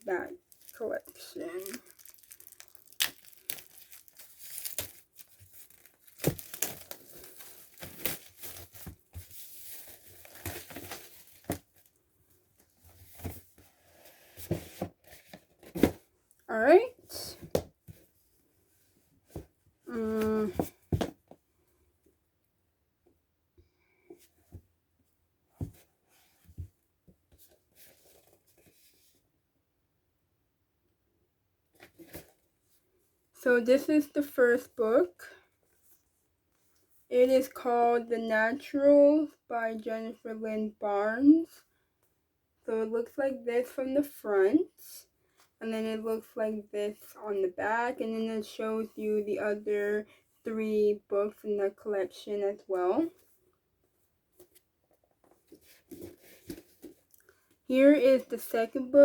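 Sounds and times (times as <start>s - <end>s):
packaging tearing and crinkling: 0.5s - 8.7s.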